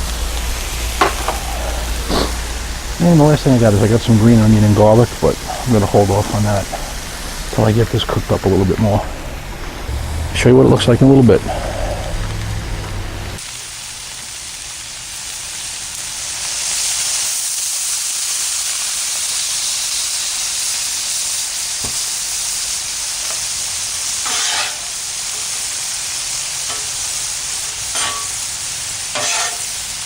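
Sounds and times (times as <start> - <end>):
vegetables sizzling on griddle: 0.0 - 30.0
spatula scrapes and clanks: 24.2 - 24.9, 27.9 - 28.4, 29.1 - 29.7.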